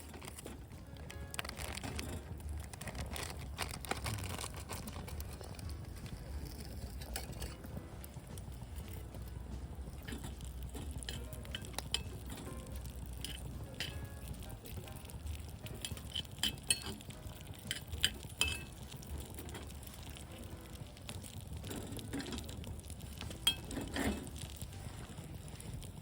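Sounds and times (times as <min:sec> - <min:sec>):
wood fire crackling and popping: 0:00.0 - 0:26.0
steady low rumble: 0:02.1 - 0:16.3.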